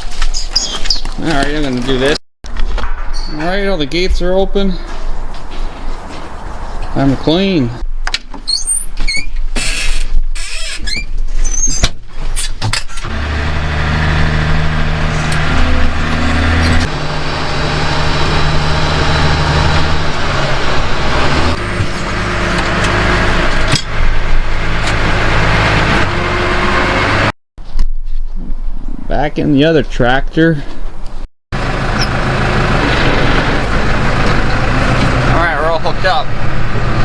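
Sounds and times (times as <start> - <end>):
tractor engine running: 3.4 - 7.8, 13.0 - 27.3, 31.6 - 37.0.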